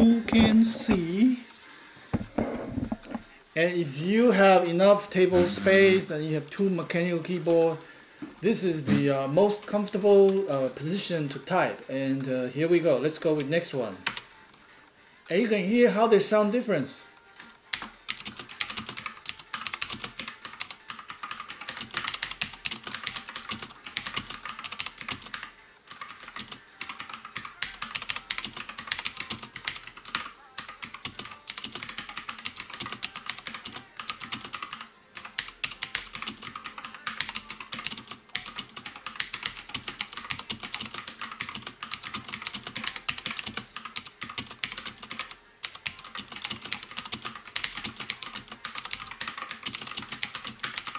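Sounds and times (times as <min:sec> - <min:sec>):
mechanical keyboard typing: 0:14.0 - 0:14.3, 0:17.7 - 0:50.9.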